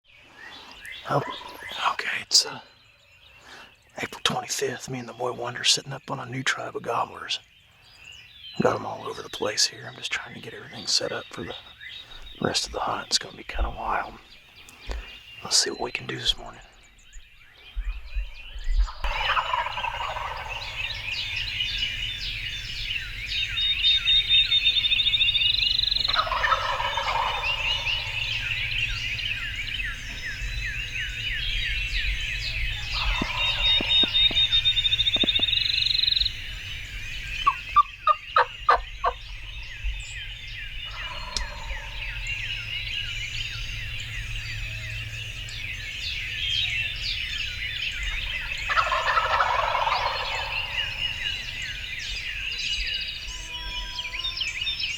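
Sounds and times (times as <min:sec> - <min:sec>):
turkeys gobbling: 0:00.8 - 0:01.8, 0:19.0 - 0:52.6
deep loud gobble: 0:19.1 - 0:21.3, 0:26.1 - 0:29.4, 0:32.6 - 0:35.8, 0:48.1 - 0:51.1.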